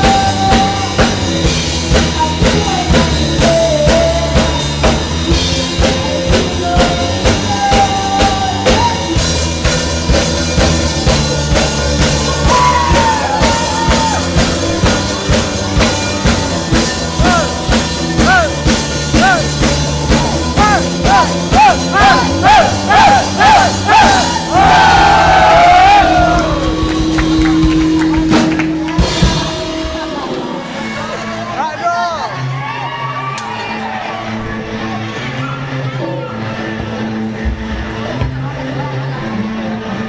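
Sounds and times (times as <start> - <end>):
drum kit beat: 0.0 - 30.4.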